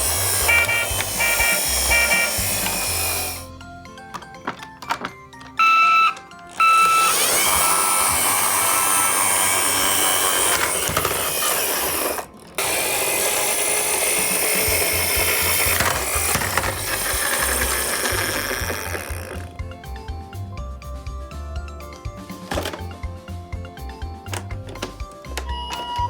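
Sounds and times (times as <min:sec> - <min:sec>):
toy clicks: 0:00.0 - 0:03.5, 0:04.1 - 0:19.5
toy mechanical whirring: 0:00.0 - 0:03.5, 0:04.1 - 0:19.6, 0:24.2 - 0:26.0
toy siren tones: 0:00.0 - 0:03.5, 0:05.5 - 0:19.4, 0:25.4 - 0:26.0
toy music: 0:00.0 - 0:26.0
electronic siren beeps: 0:05.6 - 0:08.0.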